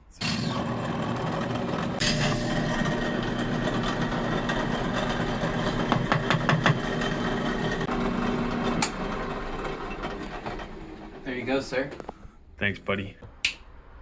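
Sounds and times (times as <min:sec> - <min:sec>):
electric power tool humming: 0:00.2 - 0:11.3.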